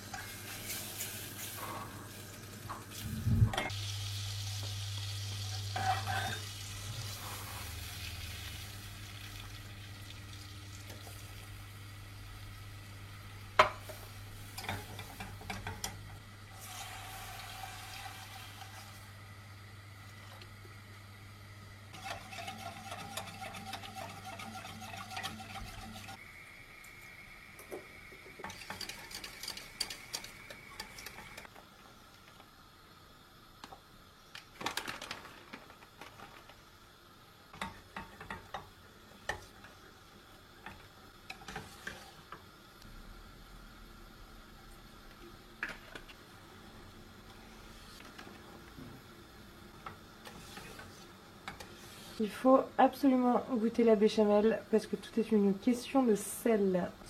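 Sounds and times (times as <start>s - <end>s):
utensil stirring in saucepan: 21.9s - 26.2s, 28.3s - 31.5s, 50.2s - 52.2s.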